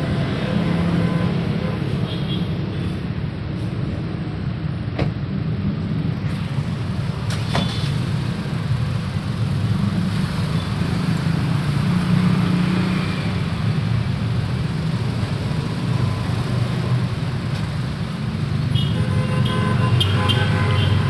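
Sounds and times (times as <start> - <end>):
traffic rumble: 0.0 - 21.0.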